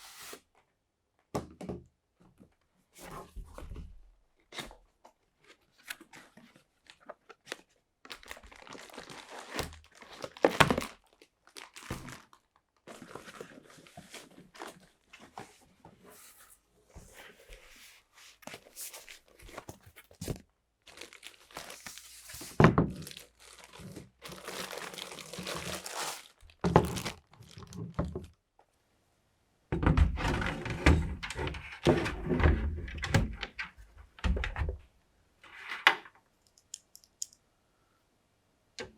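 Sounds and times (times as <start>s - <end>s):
plastic crinkling: 6.8s - 14.9s, 18.5s - 28.4s.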